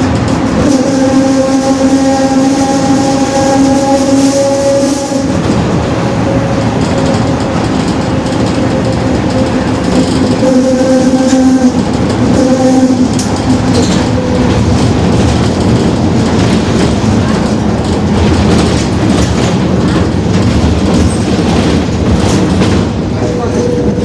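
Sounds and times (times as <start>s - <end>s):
bus rumbling and rattling: 0.0s - 24.0s
differential howl: 0.6s - 14.8s.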